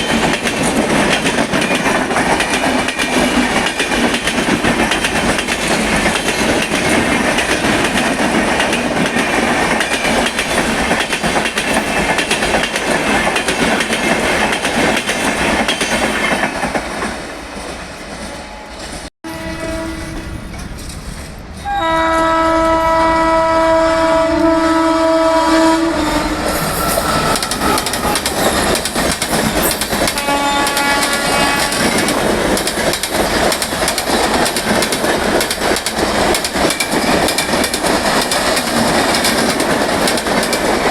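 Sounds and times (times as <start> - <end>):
train wheels clattering over rail joints: 0.0 - 17.8, 26.4 - 40.9
locomotive two-tone horn: 18.2 - 20.3, 21.6 - 28.6, 30.1 - 32.1.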